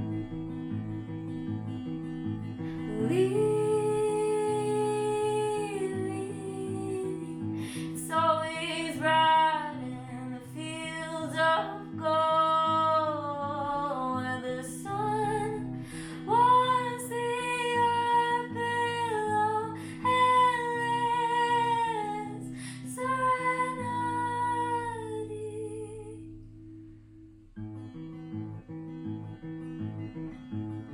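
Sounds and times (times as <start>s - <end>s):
plucked acoustic guitar: 0.0s - 30.9s
woman singing: 2.8s - 26.3s.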